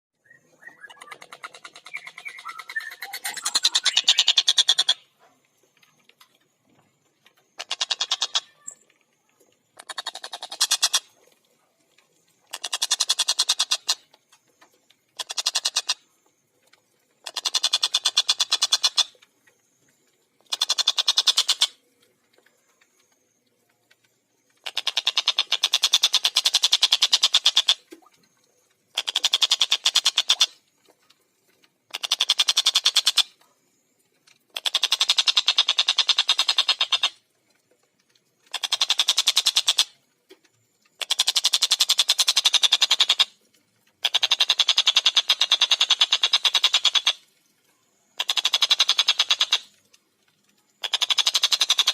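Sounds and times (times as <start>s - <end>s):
kingfisher cackling chatter: 7.6s - 8.8s.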